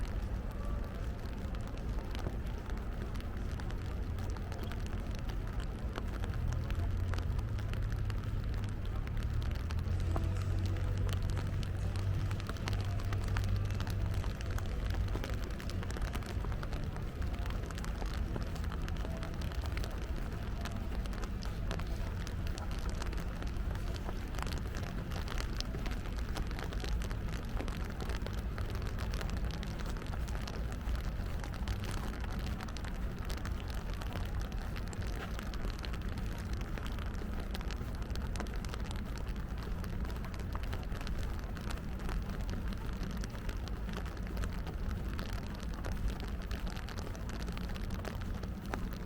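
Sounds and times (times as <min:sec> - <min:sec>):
low city rumble: 0:00.0 - 0:49.0
steady rain falling: 0:00.0 - 0:49.0.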